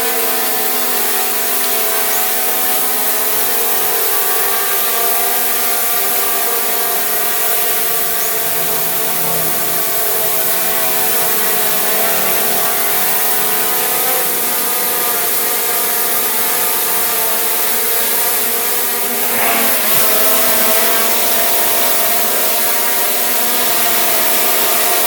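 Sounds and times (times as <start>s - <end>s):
drone propellers whirring: 1.9s - 25.0s.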